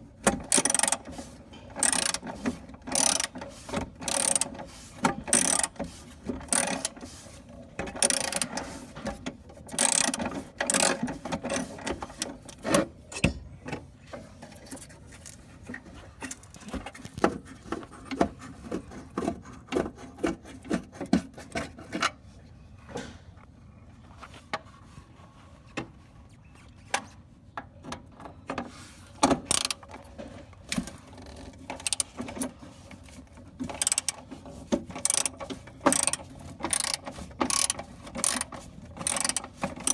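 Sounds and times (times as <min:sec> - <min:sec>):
ratchet wrench clicking: 0:00.3 - 0:01.1, 0:01.8 - 0:02.3, 0:02.9 - 0:03.4, 0:04.0 - 0:04.5, 0:05.3 - 0:05.8, 0:06.4 - 0:07.0, 0:08.0 - 0:08.6, 0:09.7 - 0:12.8, 0:29.5 - 0:29.8, 0:31.2 - 0:32.5, 0:33.7 - 0:34.2, 0:35.0 - 0:39.9
tools scraping: 0:00.3 - 0:13.3, 0:29.4 - 0:39.9.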